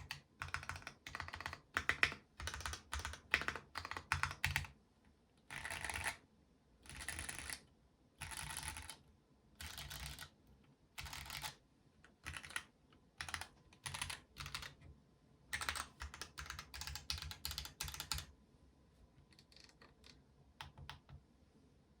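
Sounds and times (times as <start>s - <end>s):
mechanical keyboard typing: 0.0s - 4.8s, 5.5s - 6.2s, 6.8s - 9.0s, 9.6s - 10.4s, 11.0s - 14.9s, 15.5s - 18.3s, 19.3s - 21.2s.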